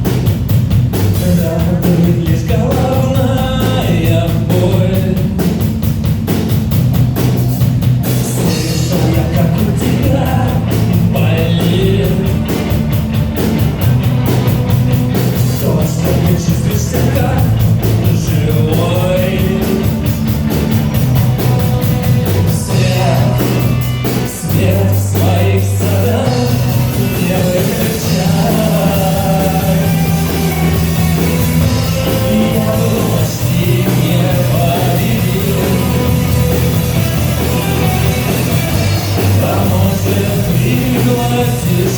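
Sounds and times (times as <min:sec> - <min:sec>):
bass guitar: 0:00.0 - 0:41.9
drums: 0:00.0 - 0:41.9
person singing: 0:01.2 - 0:05.6, 0:08.2 - 0:12.8, 0:15.3 - 0:20.1, 0:22.4 - 0:41.9.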